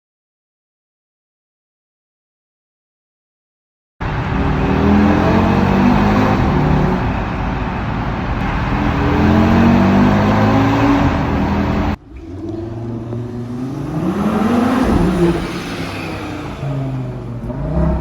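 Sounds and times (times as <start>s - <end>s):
car engine accelerating hard: 4.0s - 18.0s.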